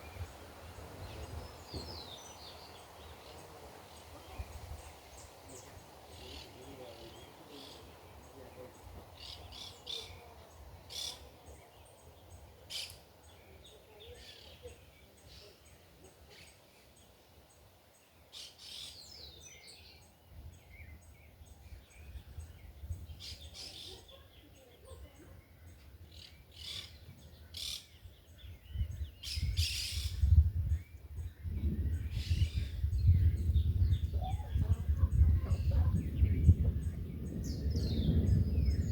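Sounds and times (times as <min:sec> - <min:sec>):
birds chirping: 0:00.0 - 0:38.9
wind buffeting microphone: 0:28.2 - 0:38.9.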